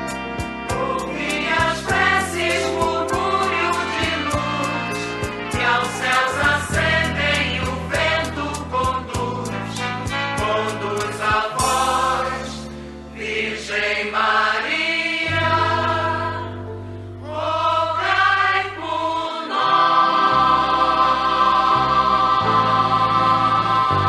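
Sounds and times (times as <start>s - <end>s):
sustained bass notes: 0.0s - 13.4s
slow music with held chords: 0.0s - 24.0s
choir-like voices: 0.6s - 24.0s.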